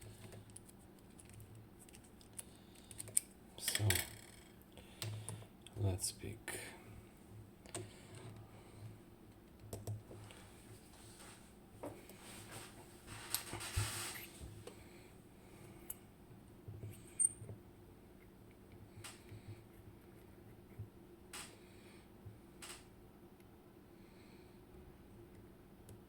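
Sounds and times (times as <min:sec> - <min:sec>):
rustle of handling: 0:10.1 - 0:14.6.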